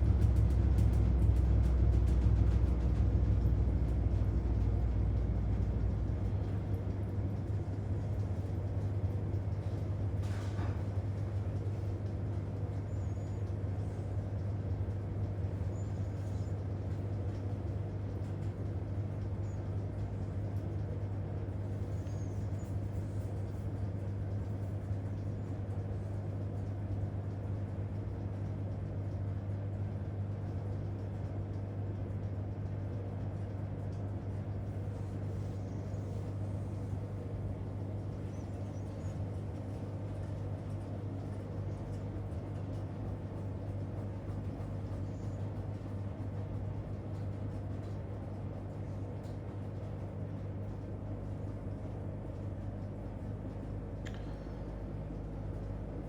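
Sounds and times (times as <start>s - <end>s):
deep rumble: 0.0s - 7.0s
washing machine humming: 0.0s - 56.0s.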